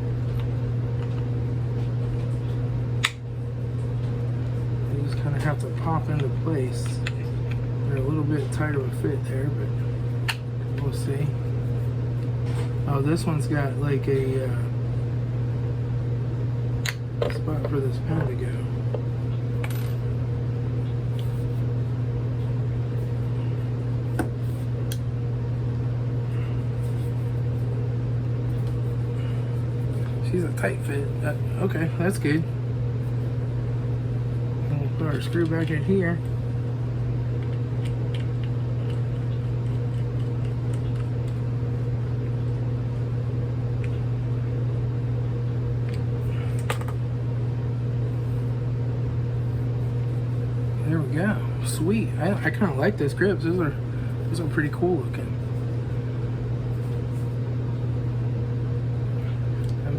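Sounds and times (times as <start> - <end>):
low machine hum: 0.0 - 59.9.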